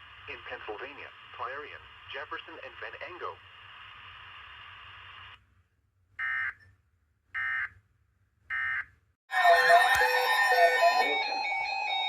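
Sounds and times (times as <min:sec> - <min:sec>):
faint radio hiss: 0:00.0 - 0:05.4
loud music: 0:09.3 - 0:12.0.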